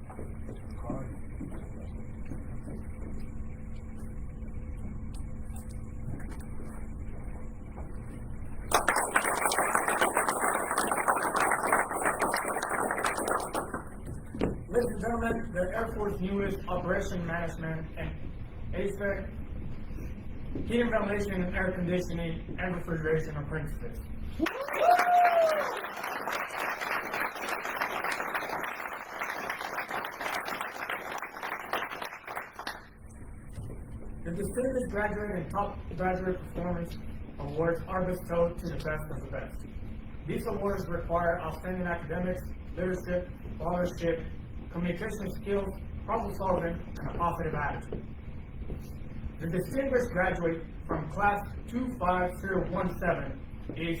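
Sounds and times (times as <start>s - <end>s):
low room hum: 0.0s - 54.0s
audience applauding: 8.7s - 14.0s, 24.4s - 32.9s
person cheering: 24.4s - 26.1s.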